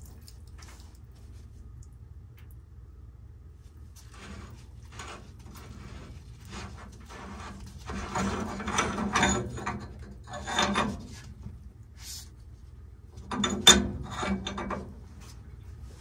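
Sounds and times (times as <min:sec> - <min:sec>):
pipe wrench scraping metal pipe: 0:04.2 - 0:11.6, 0:13.2 - 0:15.3.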